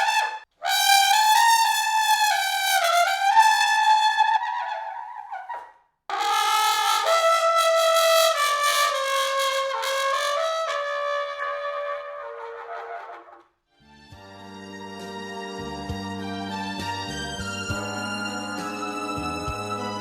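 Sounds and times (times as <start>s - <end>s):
trumpet solo: 0.0s - 4.9s, 6.1s - 13.4s, 14.1s - 20.0s.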